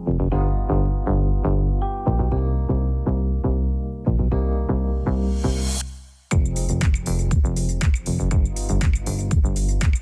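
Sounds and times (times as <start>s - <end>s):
electronic dance music: 5.8s - 10.0s.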